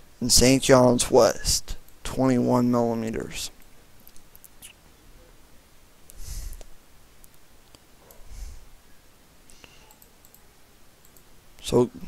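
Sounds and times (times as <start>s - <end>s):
computer mouse clicks: 4.0s - 4.8s, 9.8s - 10.4s, 11.0s - 11.3s
breaths on microphone: 6.2s - 6.7s, 8.2s - 8.7s.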